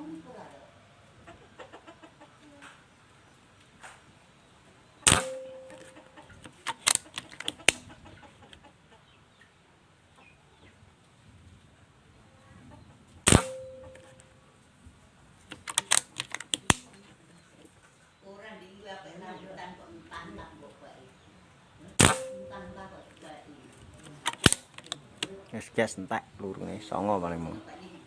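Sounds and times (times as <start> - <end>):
air rifle shots: 5.0 - 7.9, 13.2 - 14.1, 15.5 - 16.9, 22.0 - 23.0, 24.1 - 25.0
metallic ring: 5.1 - 6.2, 13.3 - 14.4, 22.0 - 23.0
rifle bolt clicking: 5.1 - 7.8, 15.5 - 17.0, 24.0 - 25.3.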